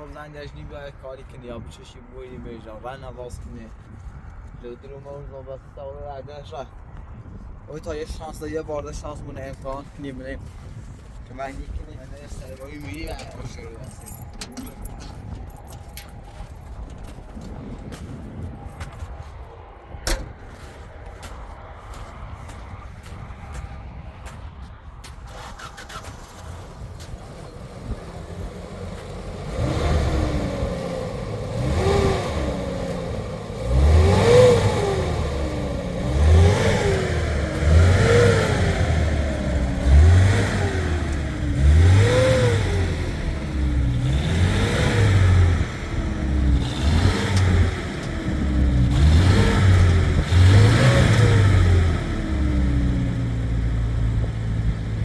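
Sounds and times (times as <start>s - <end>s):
vehicle engine revving: 25.3s - 55.0s.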